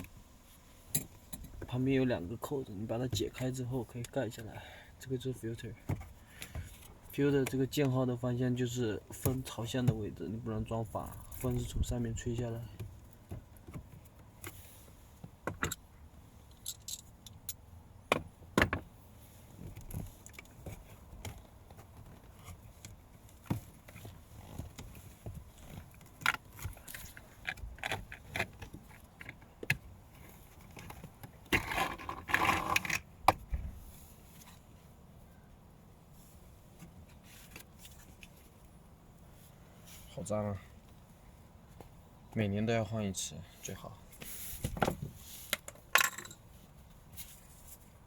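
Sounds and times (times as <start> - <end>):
filter scraping rustle: 43.6 - 45.6.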